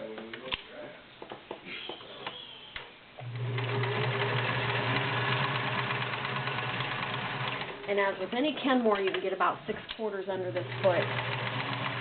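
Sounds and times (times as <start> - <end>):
sewing machine running: 3.2 - 8.4, 10.5 - 12.0.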